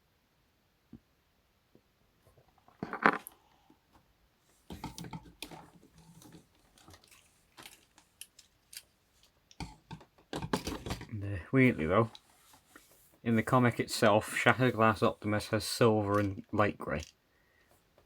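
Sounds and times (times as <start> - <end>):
plastic toy parts clicking: 6.8 - 11.1, 16.1 - 17.2.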